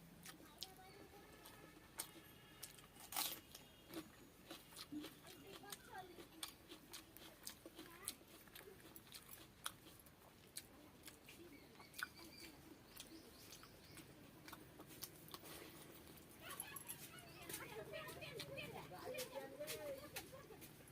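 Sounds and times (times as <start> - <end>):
person chewing: 0.1 - 19.3
wet mouth clicks: 4.8 - 15.6.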